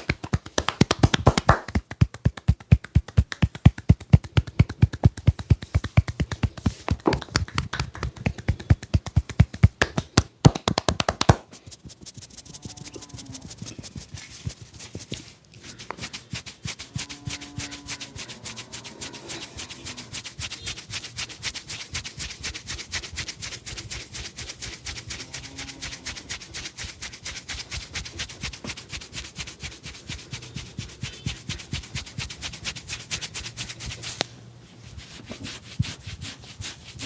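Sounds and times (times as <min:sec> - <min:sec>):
hand slaps and taps of massage: 0:00.0 - 0:12.3.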